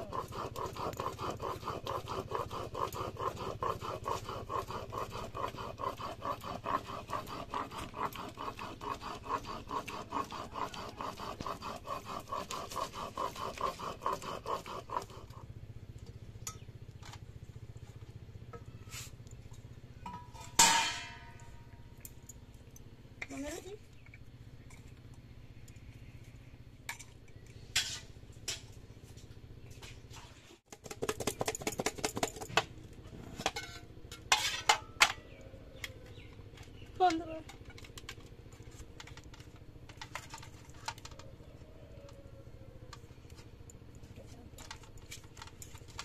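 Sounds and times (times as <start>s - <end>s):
cooking utensil scraping: 33.4s - 35.3s.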